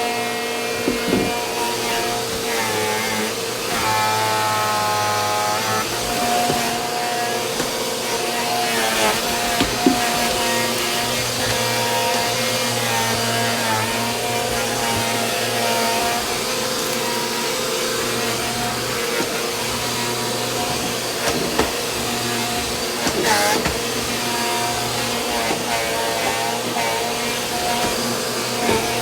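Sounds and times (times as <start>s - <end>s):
vacuum cleaner hum: 0.0s - 29.0s
sharp knocks: 5.9s - 11.7s.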